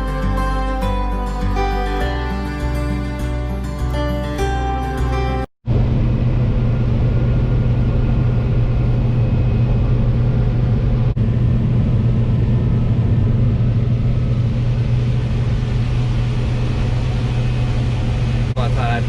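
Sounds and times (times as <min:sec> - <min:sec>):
combine harvester engine drone: 0:05.7 - 0:19.0.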